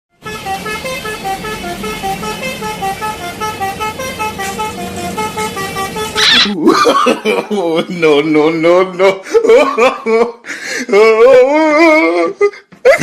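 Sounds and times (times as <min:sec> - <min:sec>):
bus horn playing tune: 0:00.1 - 0:06.5.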